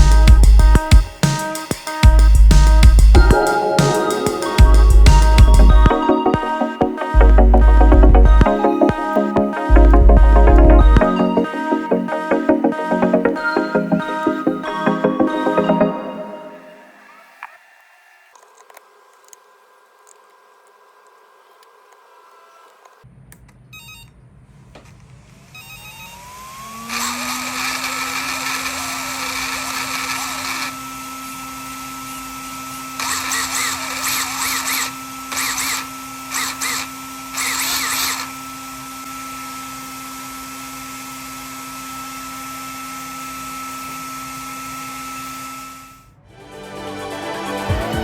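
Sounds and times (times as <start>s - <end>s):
drivetrain noise bursts: 0.0s - 16.0s
electric motor whine: 0.0s - 23.0s, 24.8s - 46.2s.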